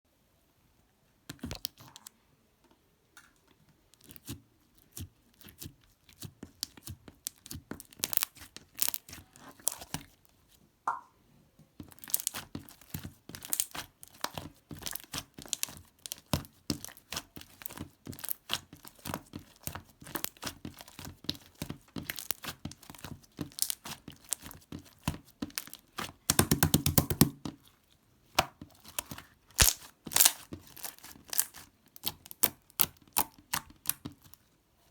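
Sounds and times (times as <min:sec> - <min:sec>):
crinkling and tearing wrapping: 0:28.8 - 0:33.1.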